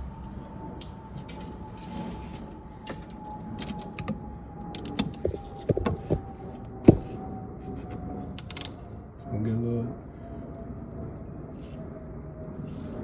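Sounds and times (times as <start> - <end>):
metal hand tools clinking: 3.6 - 4.2.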